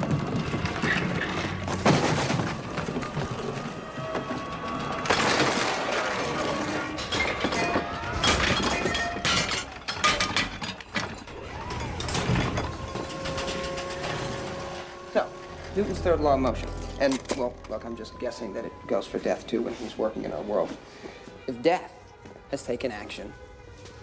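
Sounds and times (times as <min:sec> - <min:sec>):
clattering knocks and crashes: 0:00.0 - 0:15.9
mechanical rattling: 0:00.0 - 0:17.8.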